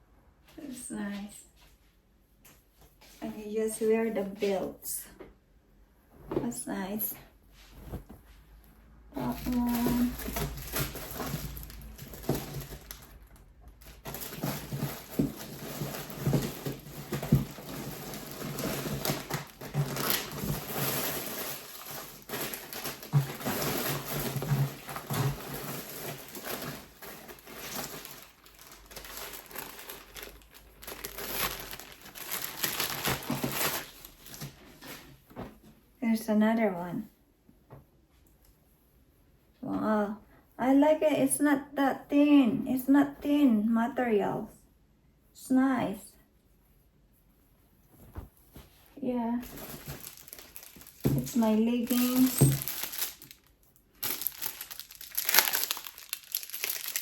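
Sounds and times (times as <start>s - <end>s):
plastic packaging crinkling: 9.2s - 34.6s, 49.4s - 57.0s.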